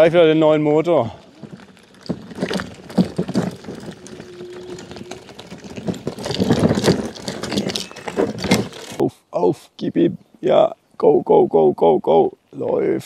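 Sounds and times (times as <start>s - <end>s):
electric scooter motor straining: 1.1s - 9.0s
rattling and knocking: 1.2s - 9.0s.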